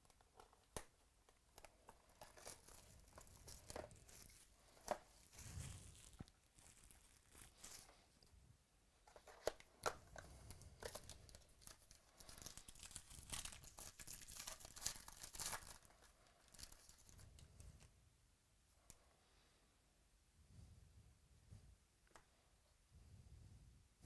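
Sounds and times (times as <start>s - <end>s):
wrapping tearing and crinkling: 0.0s - 8.0s, 9.2s - 17.5s.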